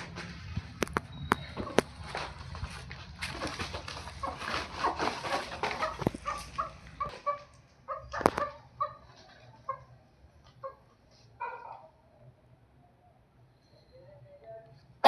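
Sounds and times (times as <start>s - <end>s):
scuffling noise: 0.0s - 7.5s
hens clucking: 0.0s - 11.9s.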